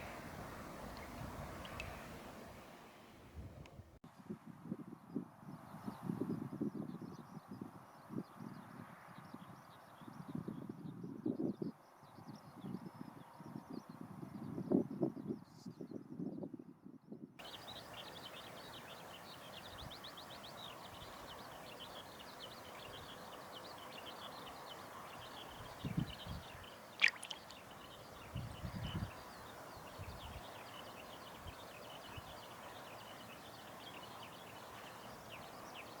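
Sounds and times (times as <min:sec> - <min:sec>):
high chirping trills: 0:27.0 - 0:27.6.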